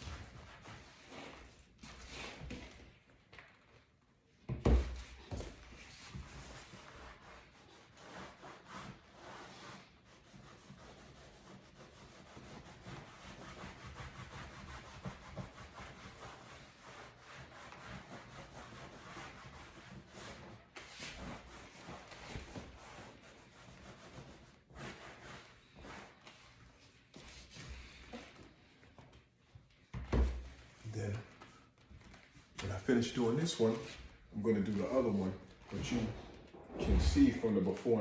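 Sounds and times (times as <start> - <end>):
cloth rubbing on leather: 5.3 - 28.4.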